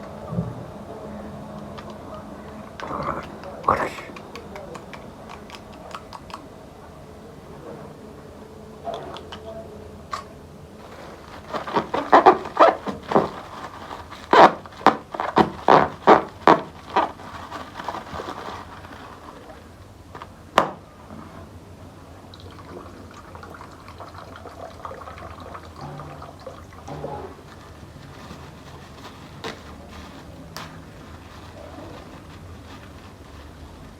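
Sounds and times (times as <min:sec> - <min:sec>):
plastic bag crinkling: 0:10.7 - 0:20.9, 0:26.2 - 0:33.9.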